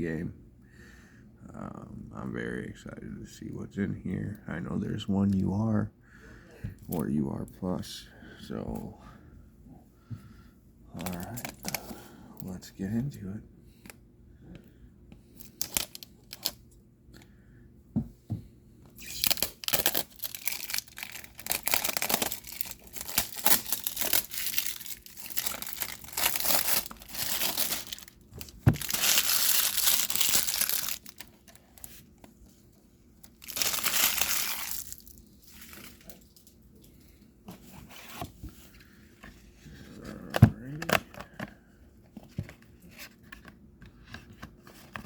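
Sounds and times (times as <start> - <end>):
plastic wrapping tearing and crinkling: 15.5 - 16.6, 19.0 - 32.0, 33.2 - 36.5.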